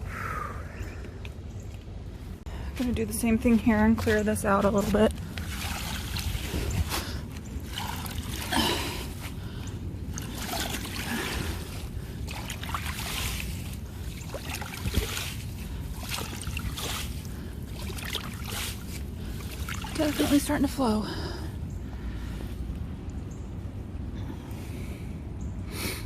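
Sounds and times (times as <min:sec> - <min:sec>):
water trickling and splashing: 0:02.8 - 0:21.5
rake swishing through water: 0:04.0 - 0:09.4, 0:10.1 - 0:20.9.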